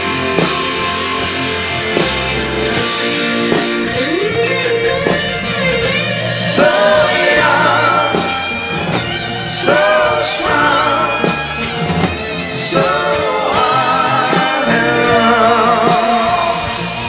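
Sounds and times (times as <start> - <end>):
guitar accompaniment: 0.0 - 17.0
person singing: 6.3 - 8.5, 12.5 - 17.0.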